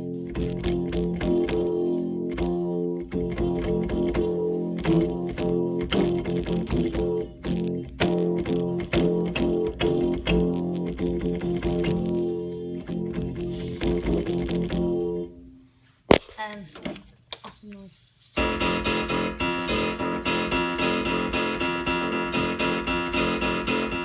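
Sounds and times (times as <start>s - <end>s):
electronic keyboard quick notes: 18.4s - 24.0s.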